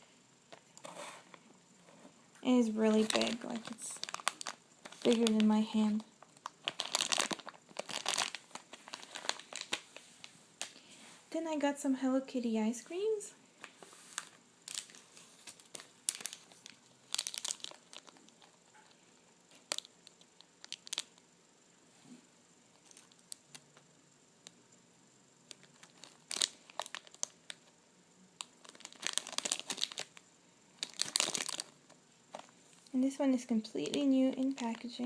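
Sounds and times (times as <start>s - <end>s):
plastic packaging crinkling: 2.5s - 10.0s, 13.6s - 18.9s, 19.5s - 21.2s, 22.7s - 23.6s, 25.5s - 27.7s, 28.4s - 30.2s, 30.8s - 32.5s, 33.7s - 35.0s.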